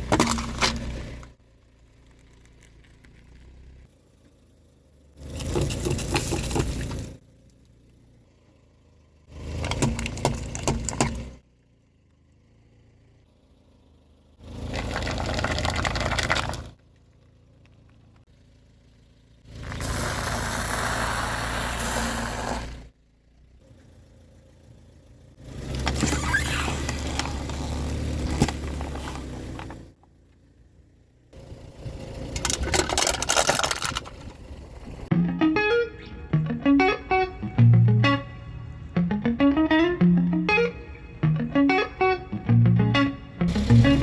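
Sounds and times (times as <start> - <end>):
car engine and tyres rolling: 0.0 - 44.0
objects cracking and crunching: 14.7 - 16.7, 32.4 - 34.4.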